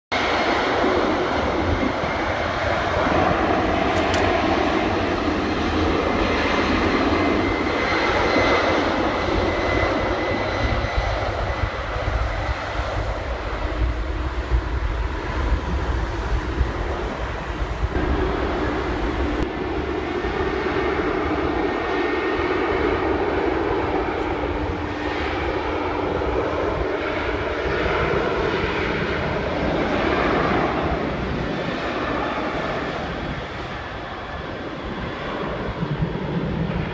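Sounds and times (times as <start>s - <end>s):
jet airliner passing overhead: 0.1s - 36.9s.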